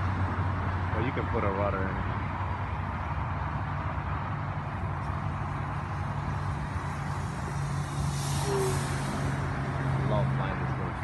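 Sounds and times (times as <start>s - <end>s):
model airplane motor buzzing: 6.0s - 9.8s.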